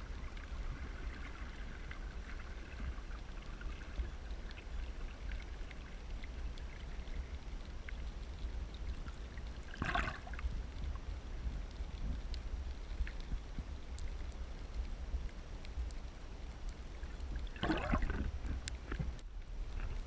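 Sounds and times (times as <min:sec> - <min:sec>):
steady low rumble: 0:00.0 - 0:20.0
water sounds: 0:00.0 - 0:20.0
faint ticks: 0:00.2 - 0:20.0
water splash: 0:09.7 - 0:10.4, 0:17.5 - 0:18.4.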